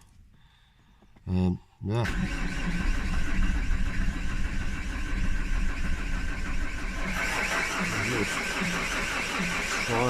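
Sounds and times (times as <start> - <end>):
starter cranking engine: 2.0 - 10.0.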